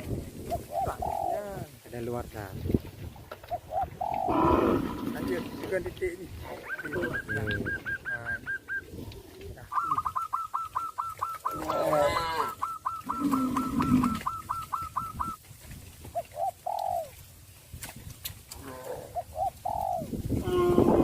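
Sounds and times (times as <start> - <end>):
farm animal calls: 0.0 - 1.7, 3.4 - 17.2, 18.5 - 21.0
bird calling short repeated notes: 9.7 - 15.4.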